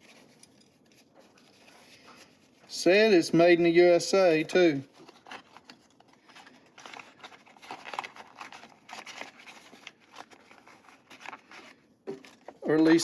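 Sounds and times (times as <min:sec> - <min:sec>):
rustling and light clicks: 0:00.0 - 0:02.7.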